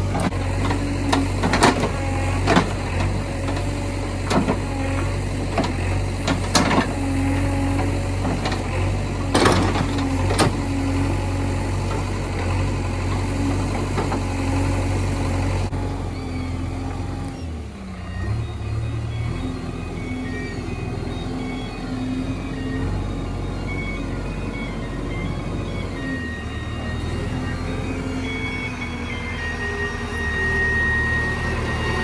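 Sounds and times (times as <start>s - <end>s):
diesel engine running: 0.0s - 32.0s
wavering mechanical whine: 0.0s - 32.0s.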